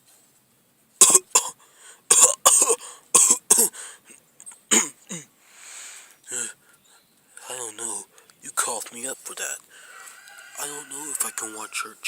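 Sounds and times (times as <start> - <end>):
person coughing: 1.0 - 3.8, 4.7 - 5.3.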